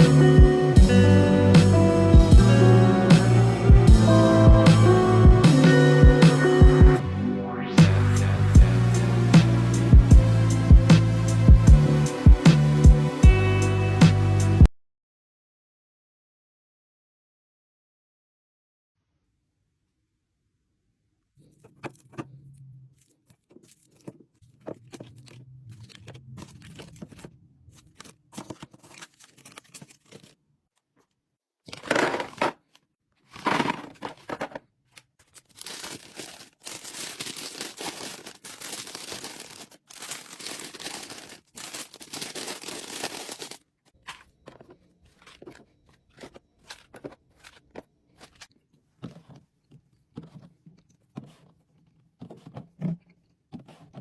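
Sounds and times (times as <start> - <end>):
plastic crinkling: 22.9 - 30.4, 31.0 - 49.4
plastic packaging tearing: 23.0 - 30.4, 31.7 - 34.4, 35.0 - 44.1.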